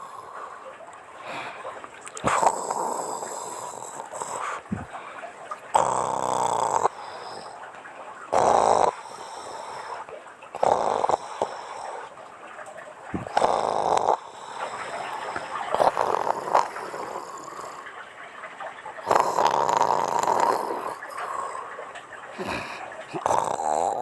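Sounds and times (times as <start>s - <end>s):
woman snoring: 2.3s - 4.2s, 5.8s - 6.9s, 8.3s - 9.0s, 10.6s - 11.5s, 13.2s - 14.4s, 15.8s - 17.8s, 19.0s - 21.6s, 22.4s - 24.0s.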